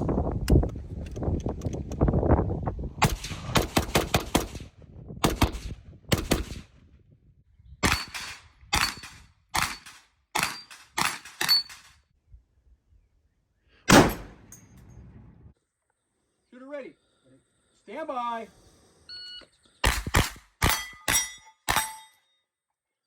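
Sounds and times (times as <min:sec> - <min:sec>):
rapid gunfire: 0:03.0 - 0:04.6, 0:05.2 - 0:06.6
single gunshots: 0:13.9 - 0:14.5.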